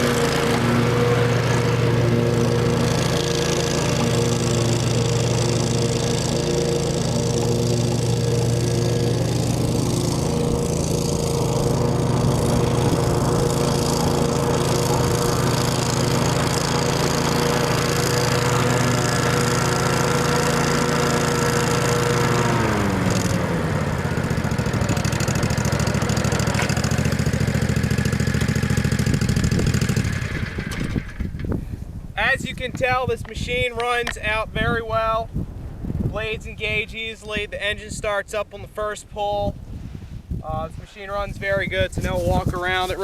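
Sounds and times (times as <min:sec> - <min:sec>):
mower engine running: 0:00.0 - 0:31.7.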